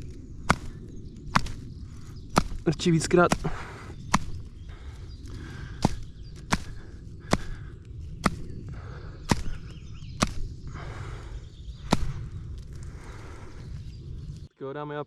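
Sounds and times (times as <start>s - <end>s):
outdoor background noise: 0.0s - 15.0s
sharp knocks: 2.3s - 4.5s, 10.2s - 10.4s.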